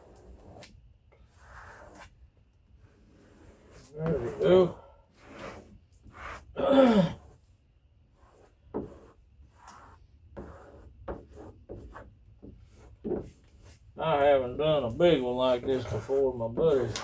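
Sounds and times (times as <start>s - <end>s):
squeegee rubbing and squeaking: 2.9s - 6.5s, 8.1s - 17.0s.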